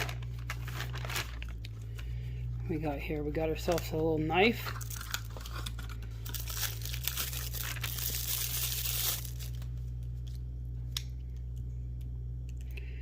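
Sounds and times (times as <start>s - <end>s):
packaging crinkling and tearing: 0.0s - 2.0s, 4.6s - 10.4s.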